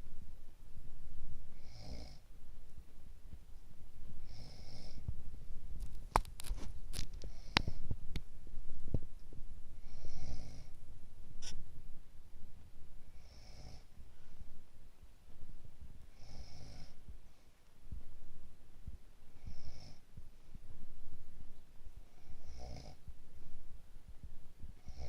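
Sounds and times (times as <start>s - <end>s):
woman snoring: 1.6s - 2.2s, 4.2s - 5.0s, 9.8s - 10.7s, 13.1s - 13.9s, 16.1s - 17.0s, 19.4s - 20.0s, 22.2s - 23.0s, 24.8s - 25.0s.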